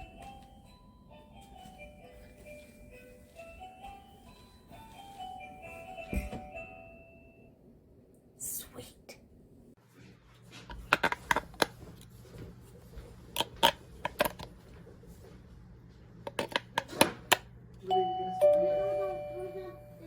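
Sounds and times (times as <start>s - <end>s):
doorbell electronic chime: 0.0s - 7.5s, 17.8s - 20.0s.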